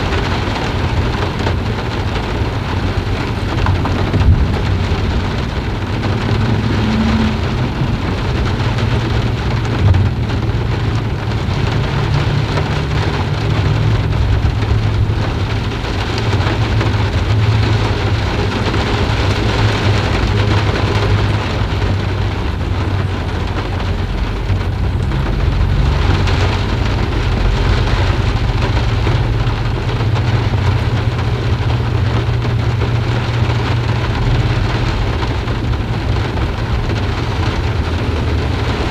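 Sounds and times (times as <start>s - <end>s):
deep low rumble: 0.0s - 38.9s
heavy rain hissing: 0.0s - 38.9s.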